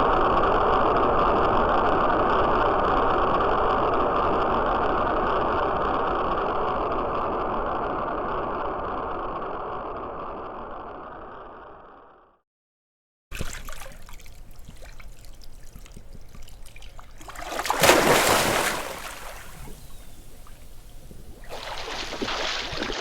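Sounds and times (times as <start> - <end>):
rocket engines rushing: 18.4 - 23.0.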